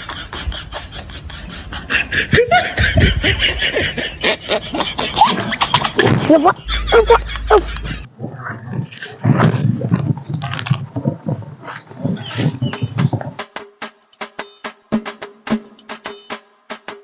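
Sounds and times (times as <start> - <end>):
people laughing loudly: 0.0 - 8.1.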